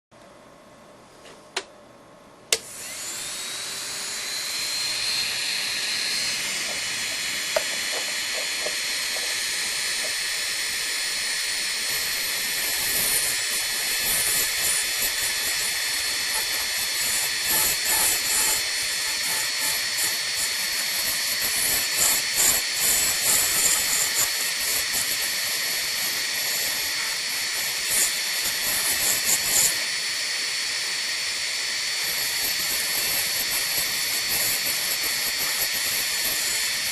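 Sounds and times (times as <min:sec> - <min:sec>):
rotary tool whining: 0:02.5 - 0:36.9
cutter scraping metal: 0:02.6 - 0:36.9.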